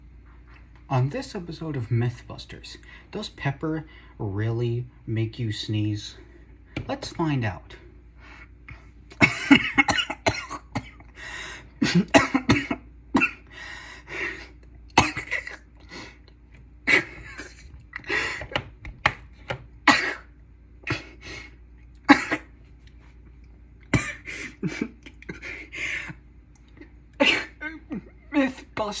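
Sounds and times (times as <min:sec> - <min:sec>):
person clearing throat: 0:09.1 - 0:11.0, 0:11.8 - 0:13.4, 0:15.0 - 0:15.7, 0:16.9 - 0:17.7, 0:19.9 - 0:21.2, 0:22.1 - 0:22.5, 0:23.9 - 0:25.7, 0:27.2 - 0:28.3
person coughing: 0:09.1 - 0:11.1, 0:11.8 - 0:13.5, 0:15.0 - 0:15.7, 0:16.9 - 0:18.5, 0:19.9 - 0:21.3, 0:22.1 - 0:22.5, 0:23.9 - 0:26.2, 0:27.2 - 0:28.5.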